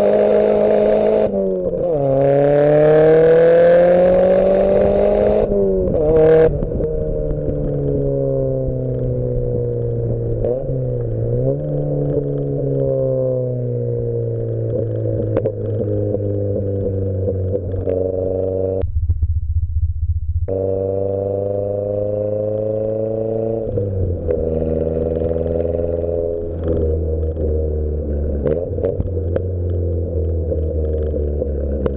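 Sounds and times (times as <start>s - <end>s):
unmuffled car engine revving: 0.0s - 31.9s
exhaust cracks: 4.1s - 23.0s.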